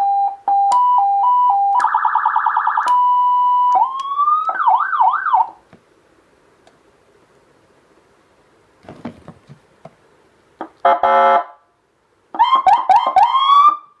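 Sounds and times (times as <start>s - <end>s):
electronic siren whoops: 1.4s - 5.6s, 12.4s - 13.9s.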